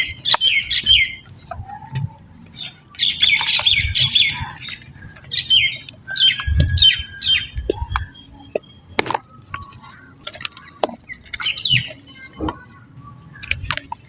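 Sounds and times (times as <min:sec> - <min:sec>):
birds squawking: 0:00.0 - 0:13.8
dull low thuds: 0:06.4 - 0:08.2.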